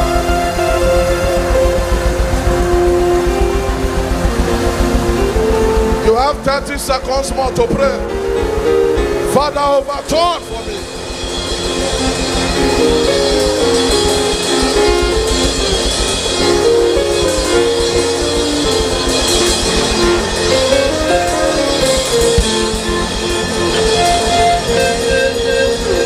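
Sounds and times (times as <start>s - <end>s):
worship band music: 0.0s - 26.0s
drum kit beat: 10.4s - 26.0s.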